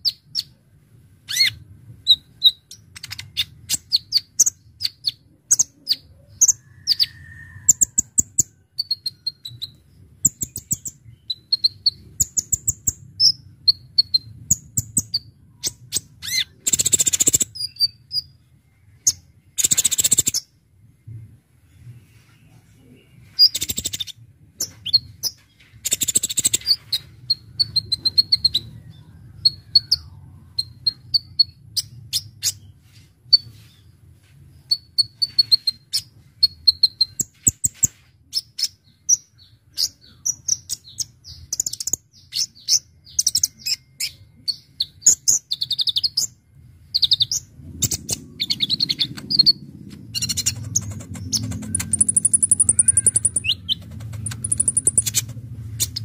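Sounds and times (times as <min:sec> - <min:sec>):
bird singing high chirps and trills: 0:00.0 - 0:00.6, 0:01.2 - 0:20.6, 0:21.7 - 0:33.9, 0:34.5 - 0:56.0.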